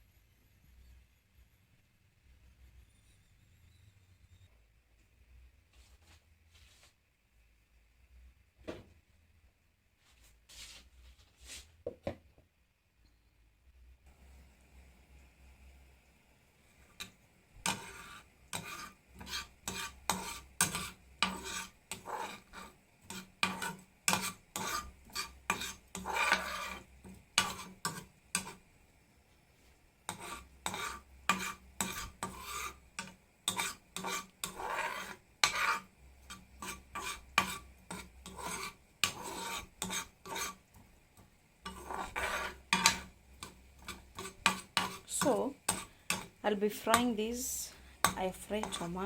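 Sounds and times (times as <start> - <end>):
utensil scraping in a pot: 16.6 - 28.8, 29.6 - 49.0.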